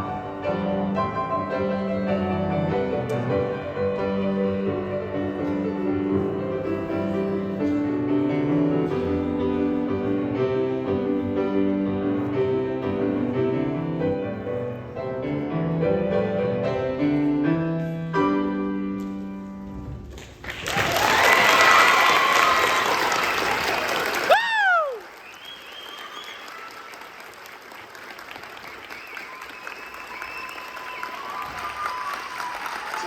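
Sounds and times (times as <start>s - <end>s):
solo piano playing: 0.0s - 19.7s
audience applause: 20.2s - 33.0s.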